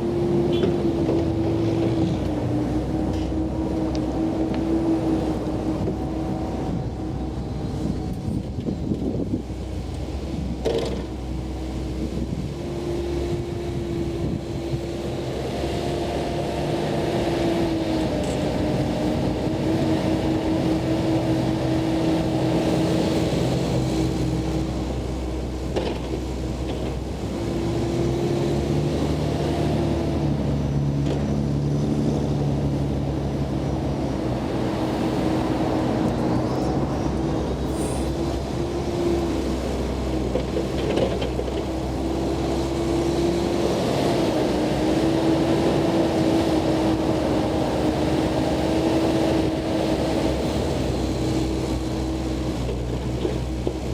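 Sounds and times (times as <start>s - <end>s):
excavator engine and hydraulics: 0.0s - 53.9s
hydraulic whine: 35.6s - 39.8s.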